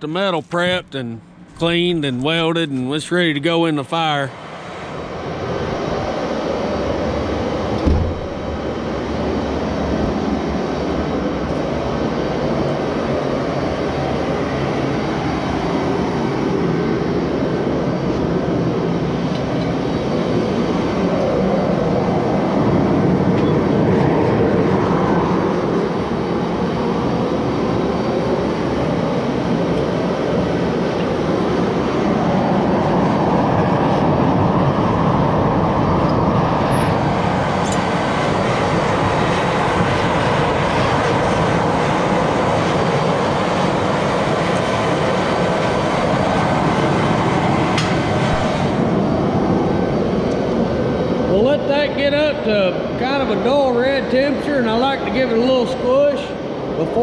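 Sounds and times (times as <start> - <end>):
knock: 7.8 - 8.3.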